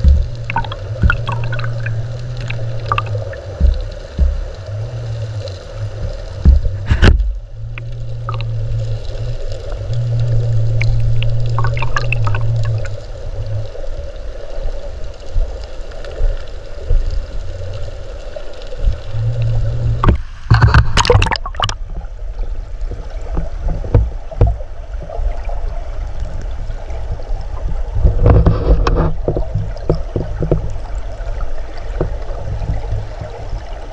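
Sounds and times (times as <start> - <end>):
sharp knocks: 0.0 - 4.5
muffled underwater river rumble: 0.0 - 33.9.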